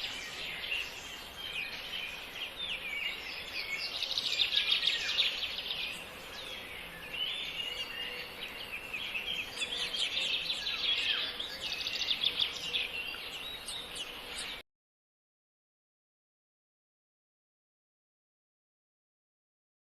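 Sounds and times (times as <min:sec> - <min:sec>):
small birds chirping: 0:00.0 - 0:14.6.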